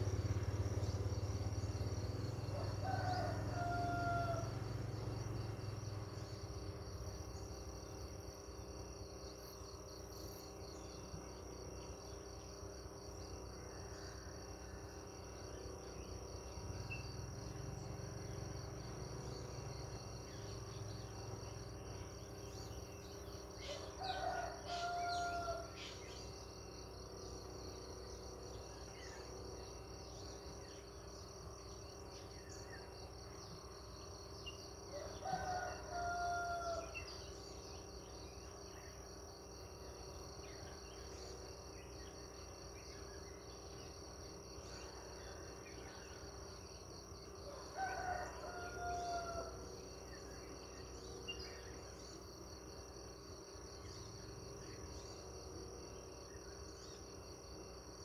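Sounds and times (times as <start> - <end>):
insects chirring: 0.0 - 58.0
rooster crowing: 2.4 - 5.2, 23.6 - 25.9, 34.9 - 37.2, 47.4 - 49.7.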